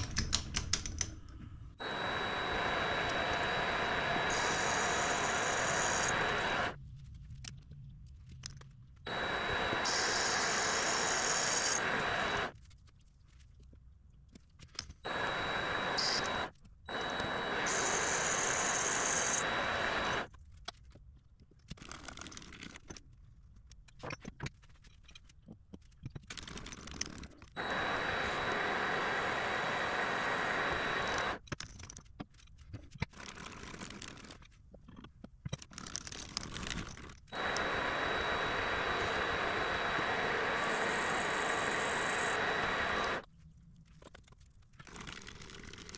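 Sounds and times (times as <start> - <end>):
small scrapes and clicks: 0.0 - 28.5, 30.7 - 45.9
hiss of cutting: 1.8 - 6.8, 9.1 - 12.5, 15.1 - 20.3, 27.6 - 31.4, 37.4 - 43.2
lathe high whine: 1.8 - 6.8, 9.1 - 12.5, 15.1 - 20.3, 27.6 - 31.4, 37.4 - 43.2.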